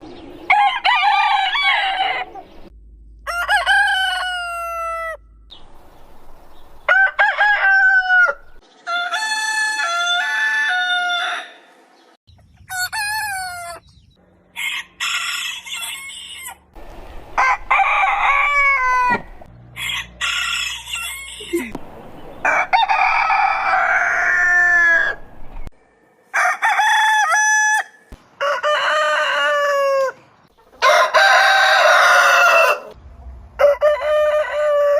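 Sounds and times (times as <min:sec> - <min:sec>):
roosters crowing: 0:00.3 - 0:05.4, 0:06.8 - 0:11.8, 0:12.6 - 0:13.9, 0:14.5 - 0:25.6, 0:26.2 - 0:34.9.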